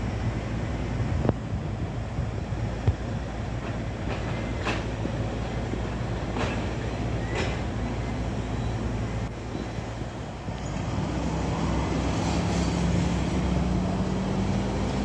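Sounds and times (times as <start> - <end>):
diesel machinery rumbling: 0.0 - 15.0.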